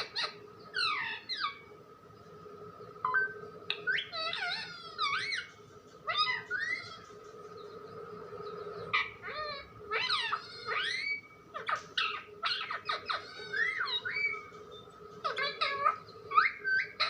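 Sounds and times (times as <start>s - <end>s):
parrot chirps and whistles: 0.0s - 1.6s, 3.0s - 5.5s, 6.1s - 7.0s, 8.9s - 14.5s, 15.2s - 17.0s
faint steady hum: 0.0s - 17.0s.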